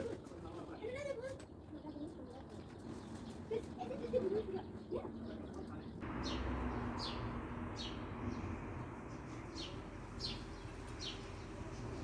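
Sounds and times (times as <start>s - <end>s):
small bird chirping: 5.6s - 12.0s.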